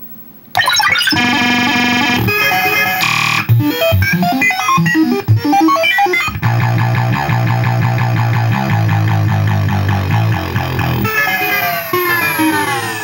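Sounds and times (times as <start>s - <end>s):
glitchy electronic beeps: 0.0s - 6.4s.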